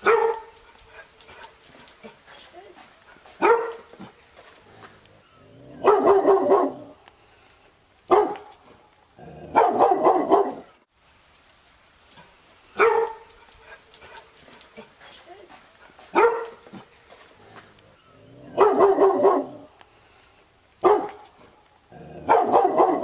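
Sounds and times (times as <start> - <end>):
dog barking: 0.0 - 0.5, 3.2 - 4.0, 5.8 - 7.0, 8.1 - 8.5, 9.5 - 10.7, 12.8 - 13.2, 16.1 - 16.8, 18.5 - 19.7, 20.8 - 21.2, 22.2 - 23.0.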